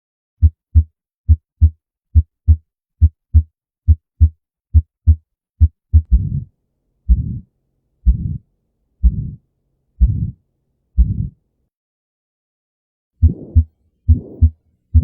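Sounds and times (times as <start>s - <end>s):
heartbeat lub-dub thumps: 0.4s - 6.5s, 7.1s - 7.5s, 8.1s - 8.4s, 9.0s - 9.4s, 10.0s - 10.4s, 11.0s - 11.4s, 13.2s - 15.0s
heart murmur whooshing: 5.6s - 6.5s, 7.1s - 7.4s, 8.1s - 8.4s, 9.0s - 9.4s, 10.0s - 10.4s, 11.0s - 11.4s, 13.2s - 15.0s.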